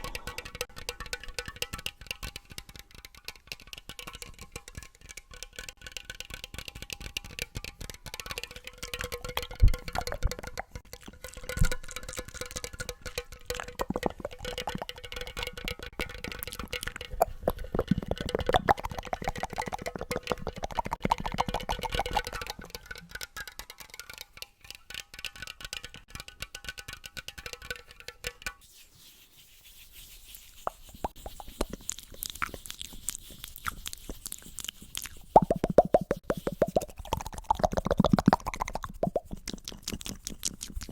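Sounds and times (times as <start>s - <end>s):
small taps on hard objects: 0.0s - 28.6s
pitched pops: 8.8s - 22.9s, 33.5s - 40.6s
crisp clicks and crackles: 31.1s - 40.9s.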